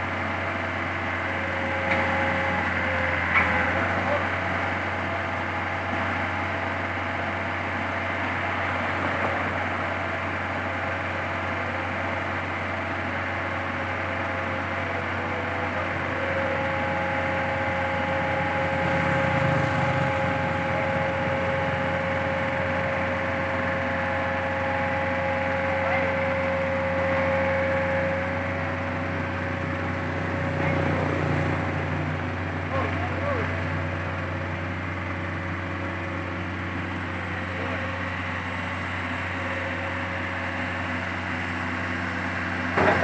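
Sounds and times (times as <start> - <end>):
diesel engine running: 0.0 - 43.0.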